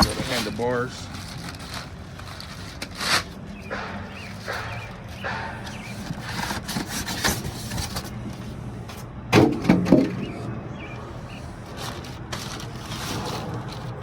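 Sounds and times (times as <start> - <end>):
cardboard packaging rustling and scraping: 0.0 - 14.0
heavy knocks: 3.6 - 7.2.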